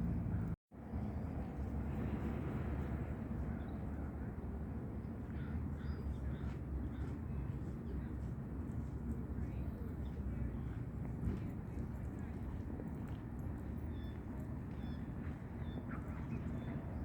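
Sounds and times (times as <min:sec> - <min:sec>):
distant traffic rumble: 0:00.0 - 0:17.0.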